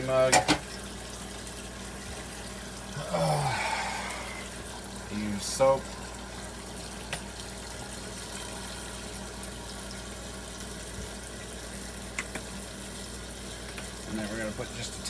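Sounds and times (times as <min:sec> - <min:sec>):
faucet running into sink: 0:00.0 - 0:15.0.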